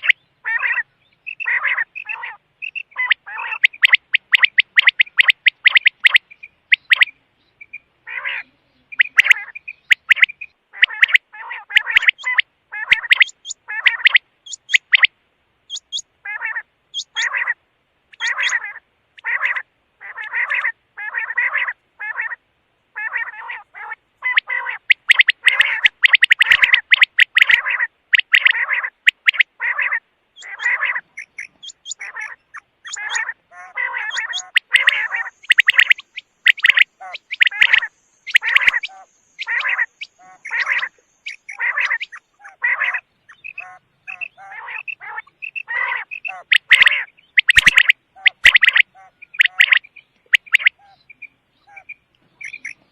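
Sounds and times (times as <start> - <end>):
quail calling: 0.0 - 52.9.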